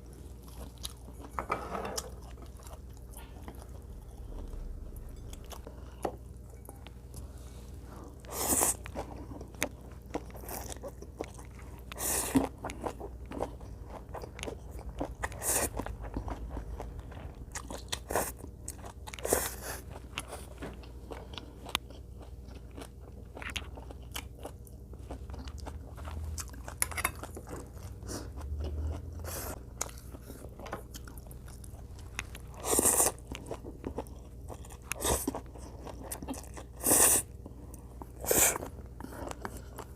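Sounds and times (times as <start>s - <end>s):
chewing and crunching food: 0.0s - 39.9s.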